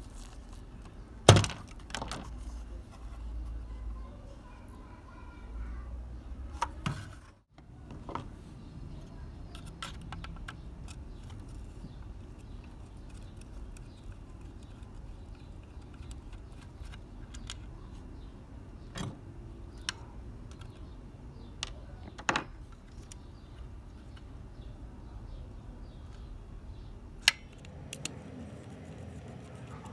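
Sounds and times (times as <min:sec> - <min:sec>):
small parts and tools clicking: 0:09.5 - 0:17.7
steady low hum: 0:22.7 - 0:29.9.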